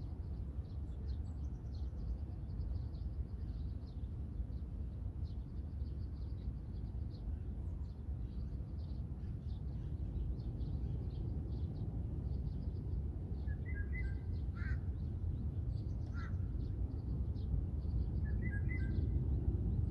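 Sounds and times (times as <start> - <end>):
steady low rumble: 14.9 - 19.9.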